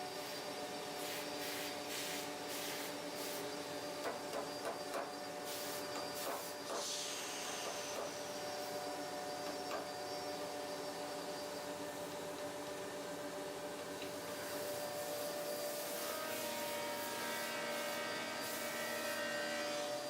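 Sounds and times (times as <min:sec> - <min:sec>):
machine whine: 0:02.8 - 0:13.4
cnc router humming: 0:02.9 - 0:20.0.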